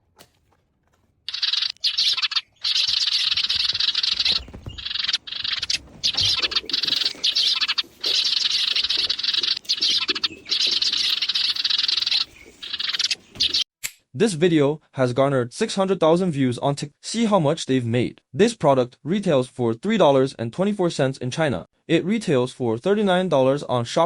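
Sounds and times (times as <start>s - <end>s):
electronic bird chirping: 1.3s - 13.7s.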